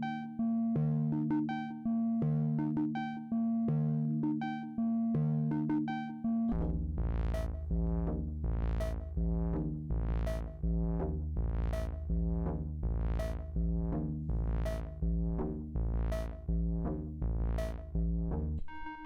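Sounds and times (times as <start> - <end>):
deep bass tone: 6.5 - 18.7.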